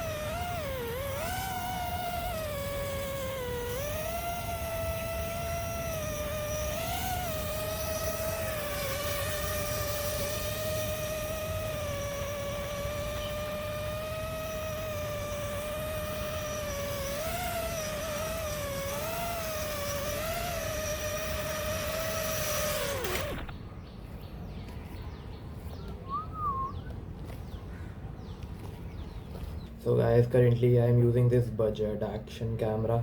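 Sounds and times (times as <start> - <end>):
drone motors whining: 0.0 - 24.2.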